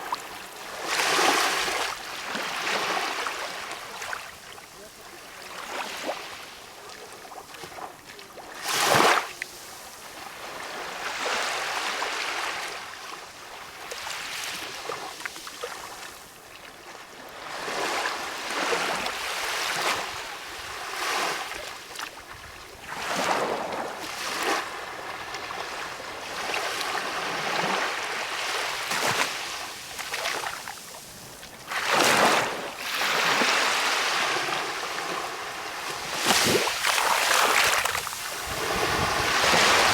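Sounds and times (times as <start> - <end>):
small sea waves washing in: 0.0 - 39.9
water splashes: 35.8 - 39.9.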